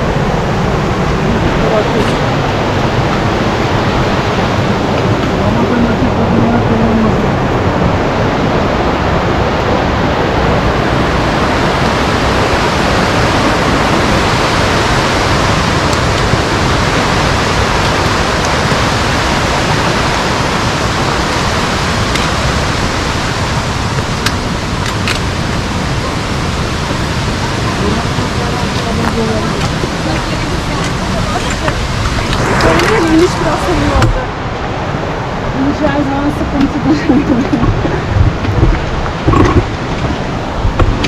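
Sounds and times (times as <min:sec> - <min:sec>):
rushing stream water: 0:00.0 - 0:41.0.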